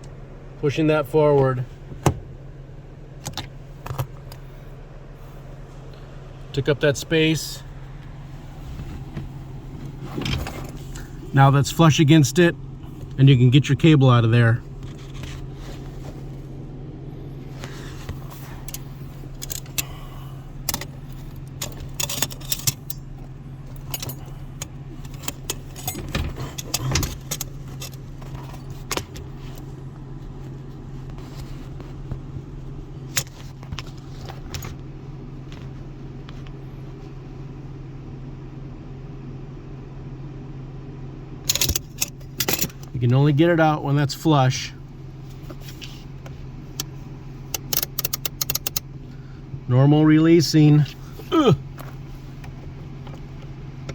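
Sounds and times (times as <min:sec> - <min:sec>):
steady low hum: 0:00.0 - 0:53.9
metallic clicks and clinks: 0:47.6 - 0:48.8.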